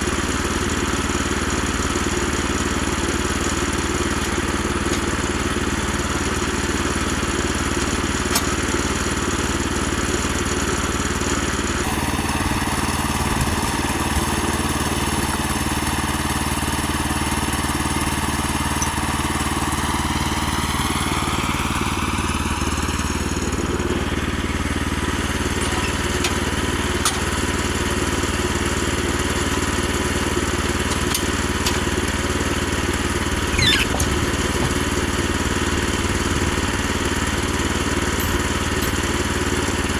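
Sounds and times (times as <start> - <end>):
sawmill gas engine running: 0.0 - 39.9
saw whine: 11.8 - 27.4.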